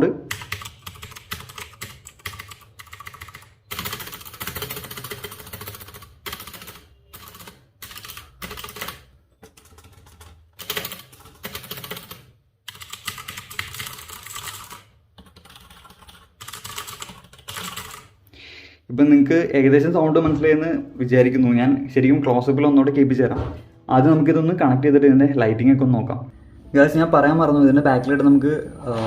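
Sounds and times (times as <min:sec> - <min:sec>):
mechanical keyboard typing clicks: 0:00.3 - 0:18.1.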